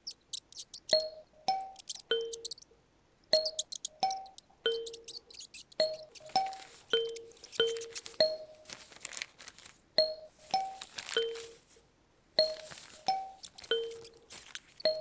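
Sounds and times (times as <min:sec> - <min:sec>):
paper rustling: 0:04.9 - 0:15.0.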